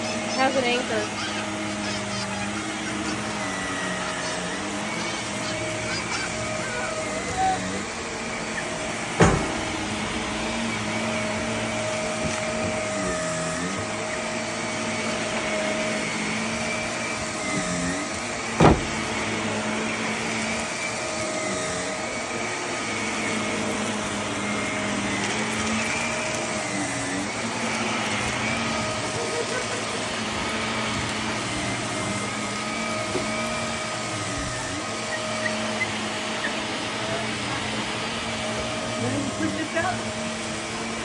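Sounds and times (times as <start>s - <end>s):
vacuum cleaner on carpet: 0.0s - 41.0s
sharp knocks: 9.2s - 10.4s, 18.6s - 19.2s.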